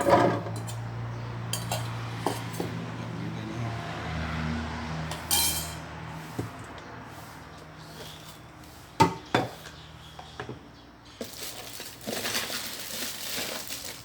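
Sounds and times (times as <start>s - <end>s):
kitchenware rattling and scraping: 0.0s - 2.9s, 5.1s - 5.9s.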